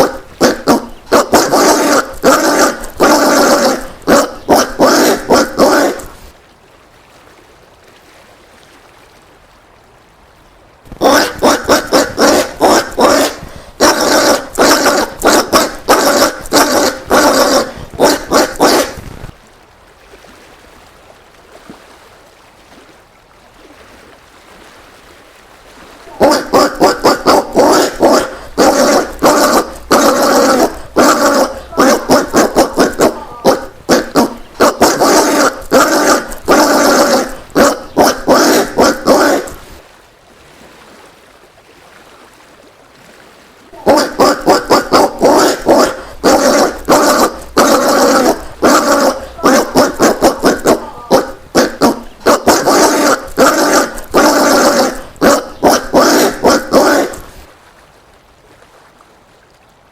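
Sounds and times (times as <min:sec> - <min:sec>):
peccaries grunting: 0:00.0 - 0:06.3, 0:11.0 - 0:19.0, 0:26.1 - 0:39.7, 0:43.8 - 0:57.5.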